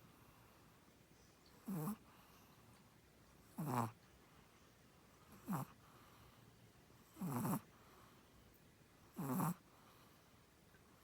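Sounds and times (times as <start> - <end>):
small dog snoring: 1.6 - 2.4, 3.5 - 4.0, 5.3 - 5.8, 7.0 - 7.7, 9.1 - 9.6.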